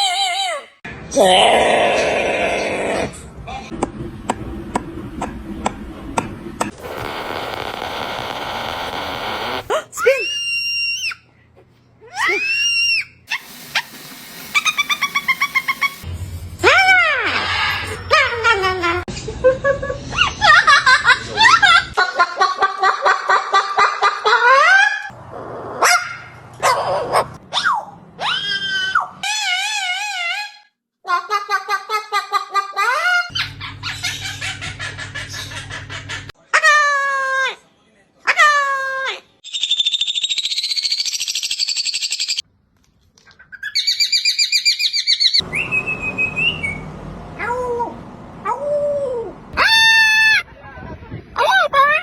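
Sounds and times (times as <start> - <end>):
parrot calling: 6.8 - 9.8, 49.6 - 50.4
held whistle: 45.4 - 46.9.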